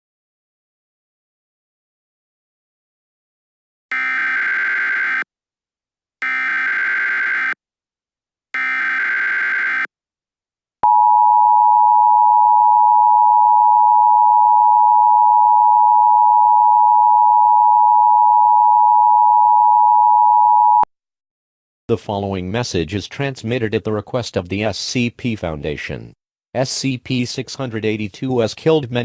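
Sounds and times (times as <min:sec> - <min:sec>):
digital alert data bursts: 0:03.9 - 0:05.2, 0:06.2 - 0:07.6, 0:08.6 - 0:09.9
two-tone attention signal: 0:03.9 - 0:05.2, 0:06.2 - 0:07.6, 0:08.6 - 0:09.9.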